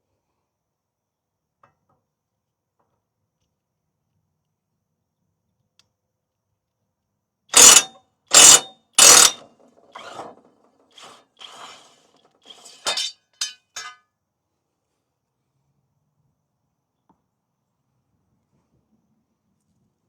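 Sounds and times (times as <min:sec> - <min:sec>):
loud metal clanks: 0:07.6 - 0:09.4
sharp metal clinks: 0:07.6 - 0:09.4.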